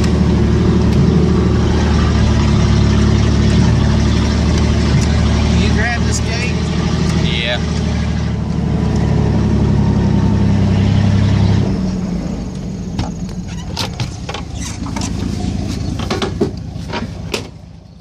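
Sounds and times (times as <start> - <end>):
pickup engine running: 0.0 - 18.0
sharp clicks and knocks: 15.9 - 17.6.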